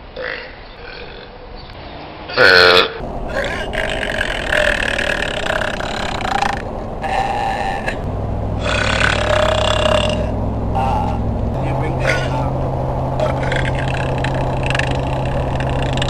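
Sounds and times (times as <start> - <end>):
woman belching: 2.4 - 11.2.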